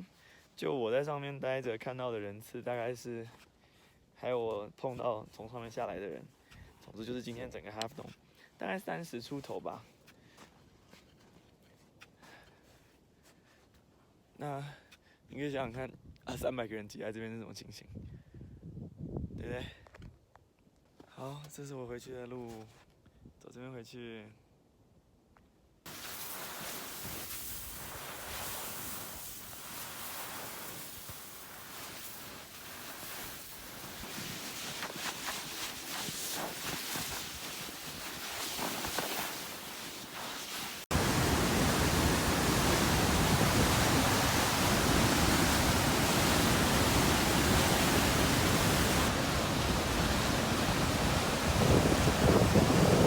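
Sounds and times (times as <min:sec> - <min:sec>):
wind rushing over microphone: 0:17.9 - 0:19.4, 0:40.9 - 0:53.0.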